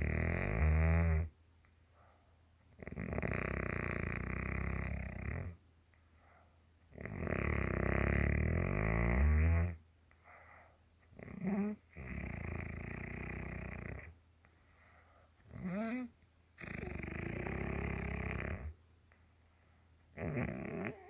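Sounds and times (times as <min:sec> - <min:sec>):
woman snoring: 0:00.0 - 0:01.3, 0:02.8 - 0:05.6, 0:07.0 - 0:09.8, 0:11.2 - 0:14.1, 0:15.5 - 0:18.8, 0:20.2 - 0:21.0
quiet breaths: 0:00.0 - 0:21.0.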